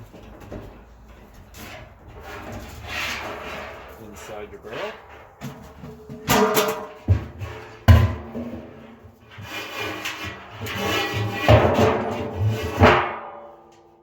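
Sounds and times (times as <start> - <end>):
knocking and scraping in steel barrel: 0.0 - 13.8
metal drum clanks ringing: 4.2 - 9.0, 10.0 - 14.0.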